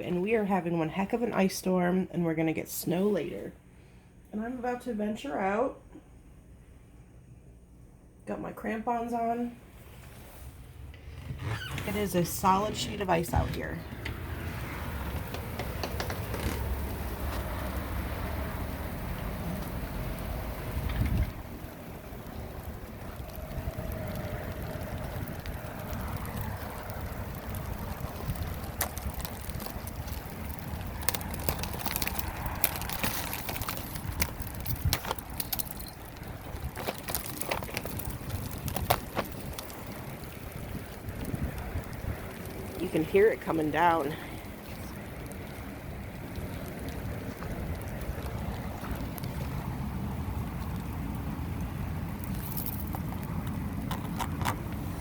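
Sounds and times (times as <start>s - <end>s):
wind rumble on microphone: 10.7s - 55.0s
sleet ticking on ice: 21.7s - 43.6s.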